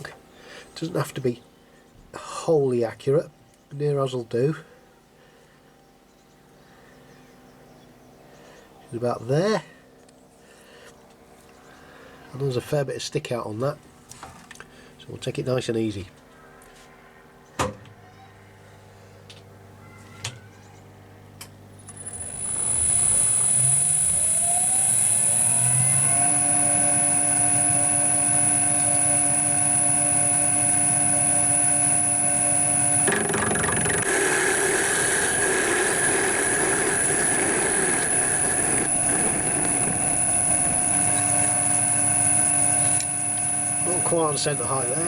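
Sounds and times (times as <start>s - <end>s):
lathe motor hum and whine: 21.7s - 45.0s
tool cutting metal bar: 21.9s - 45.0s.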